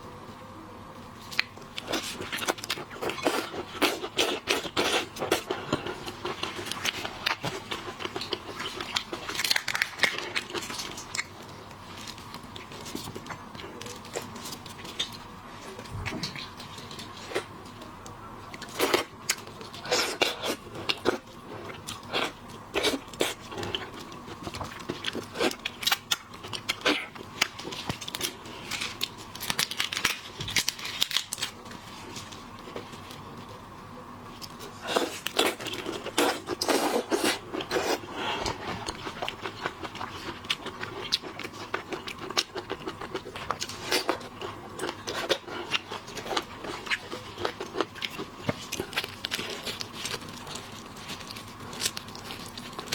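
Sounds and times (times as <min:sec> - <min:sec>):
chewing: 0:01.2 - 0:33.5, 0:34.3 - 0:52.9
seafood shells cracking and peeling: 0:01.3 - 0:15.3, 0:21.8 - 0:32.8, 0:38.4 - 0:52.9.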